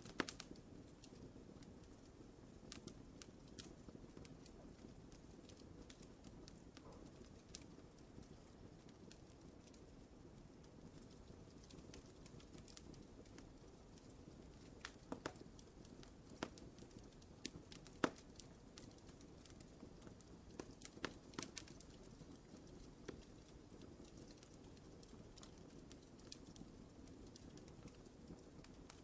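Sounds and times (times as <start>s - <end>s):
wood fire crackling and popping: 0.0s - 29.0s.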